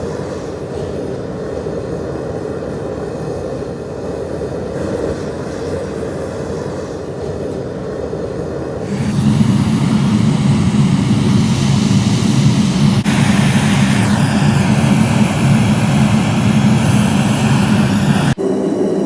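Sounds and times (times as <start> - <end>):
gas burner rushing: 8.8 - 18.4.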